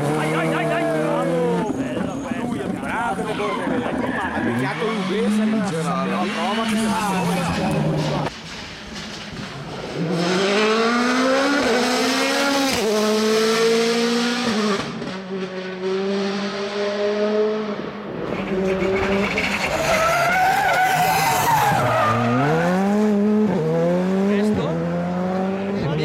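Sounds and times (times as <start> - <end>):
rally car engine revving: 0.0 - 8.3, 9.2 - 26.0
tyres squealing and skidding: 0.1 - 8.3, 18.2 - 23.0.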